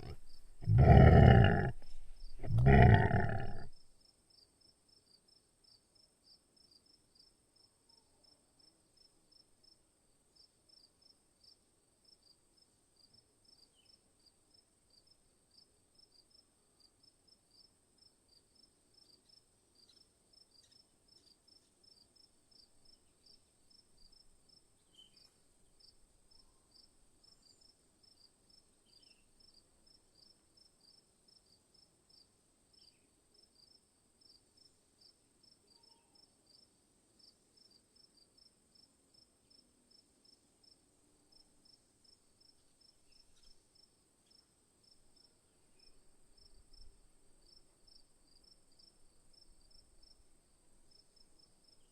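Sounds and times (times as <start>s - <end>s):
regular high insect chirp: 18.4s - 51.9s.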